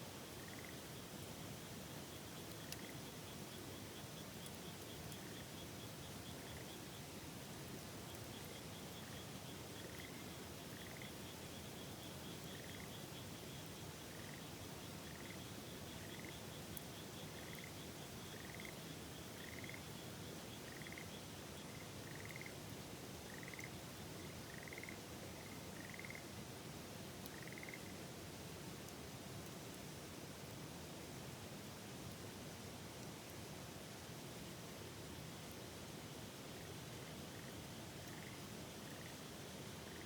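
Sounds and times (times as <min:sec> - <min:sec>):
frogs chirping: 0:00.4 - 0:00.8, 0:02.2 - 0:07.0, 0:08.1 - 0:16.6, 0:17.2 - 0:22.6, 0:23.3 - 0:23.8, 0:24.5 - 0:26.2, 0:27.3 - 0:27.9, 0:37.2 - 0:39.2.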